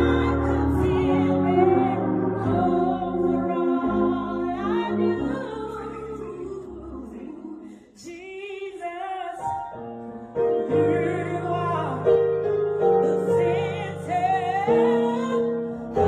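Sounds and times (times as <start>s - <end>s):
sustained keyboard chords: 0.0s - 7.0s
person singing with vibrato: 0.0s - 12.2s.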